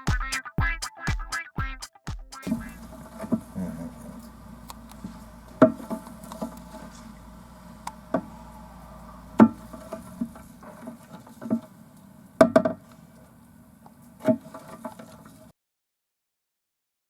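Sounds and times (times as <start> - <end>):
diaphragm pump humming: 2.4 - 15.5
solids clicking and knocking: 2.4 - 15.5.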